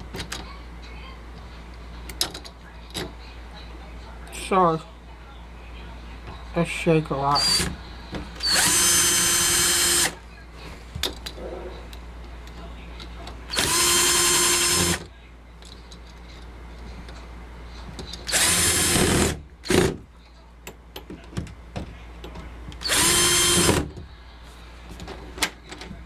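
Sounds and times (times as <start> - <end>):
electric drill whining: 8.4 - 10.1, 13.5 - 15.0, 18.3 - 19.3, 22.8 - 23.8.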